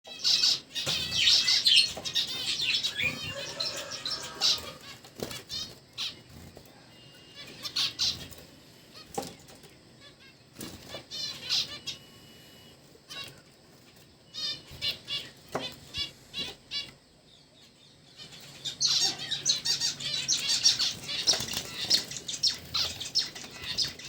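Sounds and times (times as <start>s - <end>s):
cage birds chirping: 0.0s - 24.0s
wings flapping: 20.4s - 24.0s.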